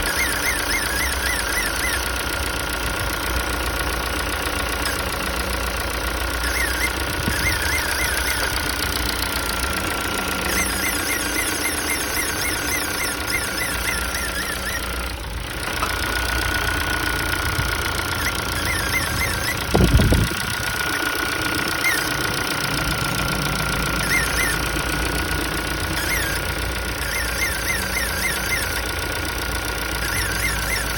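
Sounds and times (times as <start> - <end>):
squeaky chirps: 0.0 - 2.3, 6.4 - 16.3, 17.2 - 20.8, 21.7 - 22.4, 23.8 - 29.2, 29.8 - 30.9
car engine idling: 0.0 - 30.9
high-pitched whistle: 0.1 - 2.1, 10.5 - 15.0, 18.2 - 20.3, 26.0 - 28.9, 30.0 - 30.9.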